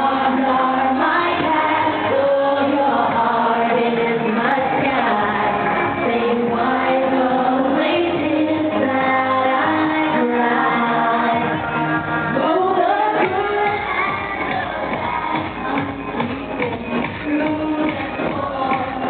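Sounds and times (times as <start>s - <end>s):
live dance-pop music: 0.0s - 19.0s.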